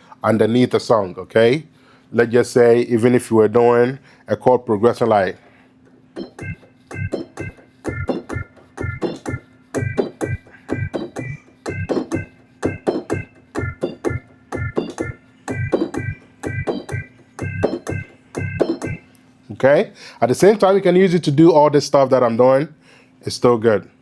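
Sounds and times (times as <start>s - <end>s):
synthesizer organ stabbed chords: 6.0s - 19.1s.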